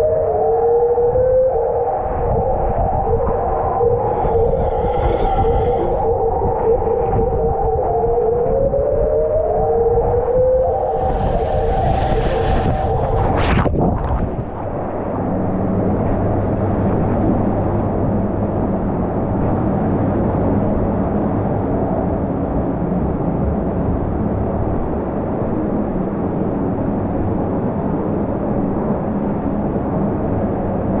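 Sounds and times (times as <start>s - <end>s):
low even hum: 3.5s - 7.2s
water rushing: 4.1s - 6.1s, 10.2s - 14.2s.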